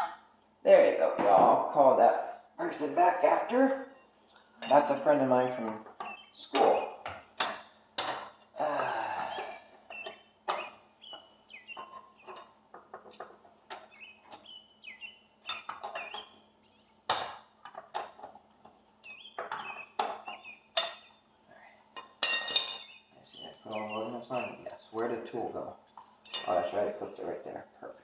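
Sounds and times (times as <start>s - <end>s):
tools clinking on metal: 7.4s - 8.5s, 20.8s - 21.2s, 22.0s - 23.1s, 26.2s - 26.9s.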